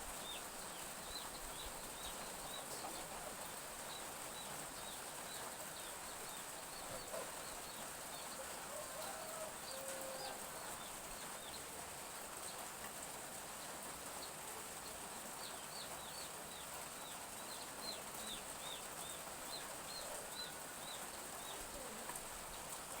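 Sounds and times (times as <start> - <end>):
chicks peeping: 1.1 - 8.6.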